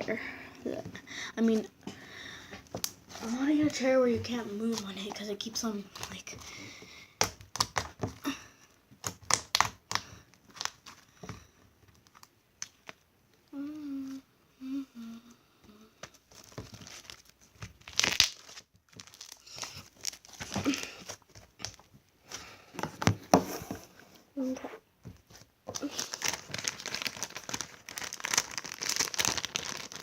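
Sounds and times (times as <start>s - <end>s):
foil crinkling and crackling: 2.3s - 6.6s, 7.3s - 13.0s, 16.0s - 23.8s, 25.2s - 30.0s
person humming: 13.5s - 16.0s.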